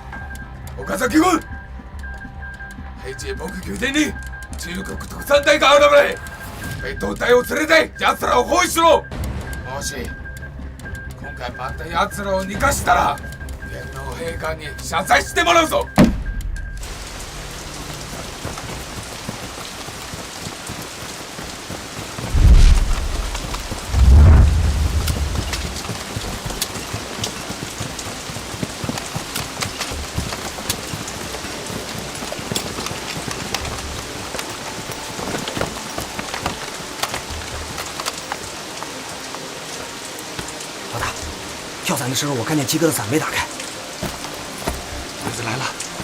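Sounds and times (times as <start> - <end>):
heavy rain: 0.0 - 46.0
thunder rumbling: 6.2 - 13.6, 16.0 - 34.8.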